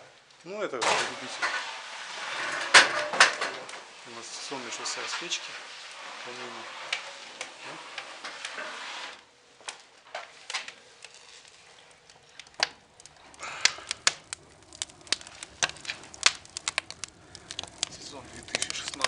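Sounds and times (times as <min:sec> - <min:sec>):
steady hiss: 0:00.0 - 0:19.0
sharp clicks and ticks: 0:12.4 - 0:19.0.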